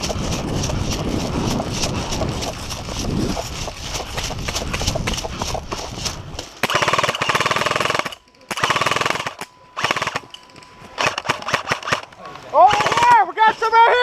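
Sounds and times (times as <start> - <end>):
airsoft guns firing bursts: 6.6 - 10.3, 11.0 - 13.3.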